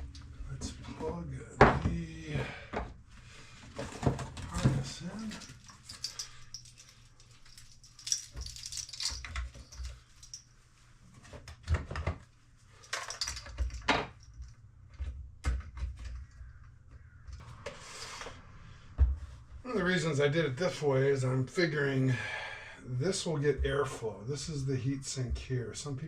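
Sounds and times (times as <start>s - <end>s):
wires rustling: 3.1s - 11.5s.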